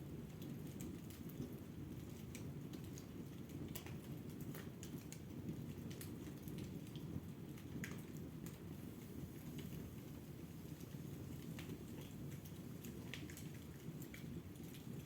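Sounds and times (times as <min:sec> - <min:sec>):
fire crackling and popping: 0:00.0 - 0:15.0
fire rumbling: 0:00.0 - 0:15.0.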